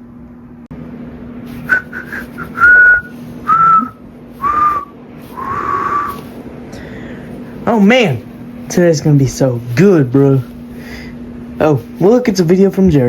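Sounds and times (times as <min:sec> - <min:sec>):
steady low hum: 0:00.0 - 0:13.0
person whistling a tune: 0:01.7 - 0:06.2.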